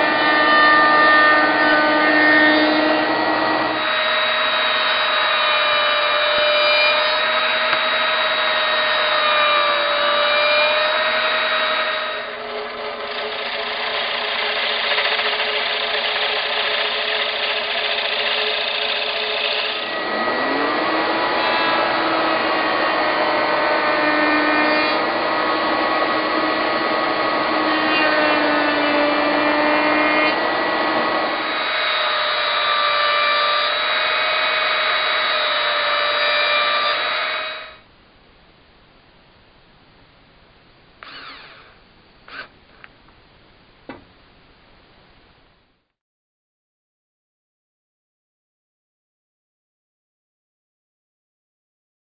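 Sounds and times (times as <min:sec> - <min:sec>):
lathe motor humming and whining: 0:00.0 - 0:37.8, 0:41.0 - 0:42.5.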